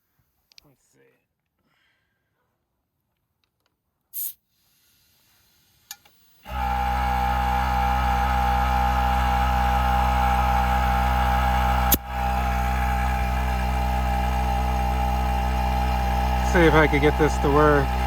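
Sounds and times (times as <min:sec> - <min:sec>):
air compressor humming: 0:06.2 - 0:18.0.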